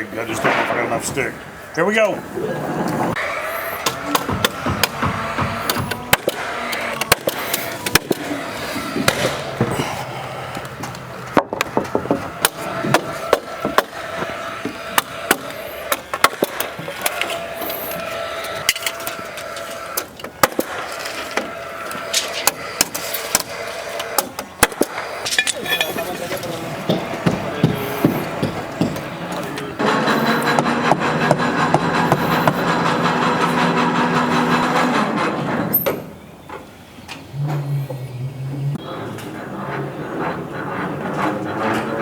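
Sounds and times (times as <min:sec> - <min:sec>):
mechanical hum: 0:00.0 - 0:42.0
hammer knocks on wood: 0:04.1 - 0:06.4.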